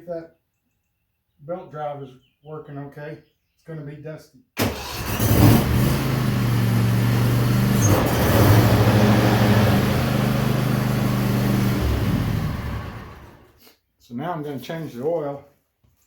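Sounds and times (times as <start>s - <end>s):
mower engine running: 4.6s - 13.5s.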